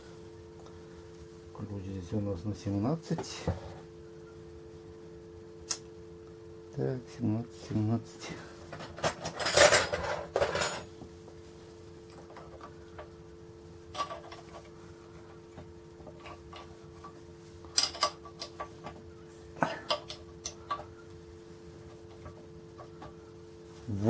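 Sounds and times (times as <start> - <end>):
steady two-tone hum: 0.0 - 24.0
metal tools clinking and rattling: 8.7 - 11.0, 17.7 - 18.7.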